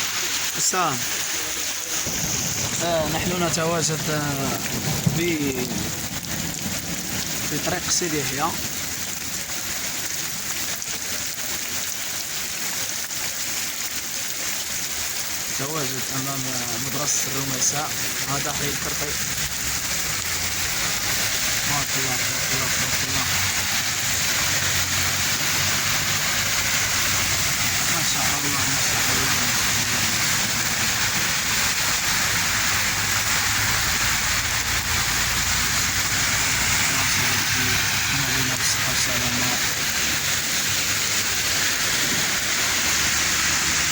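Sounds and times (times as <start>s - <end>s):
rain on hard surfaces: 0.0s - 43.9s.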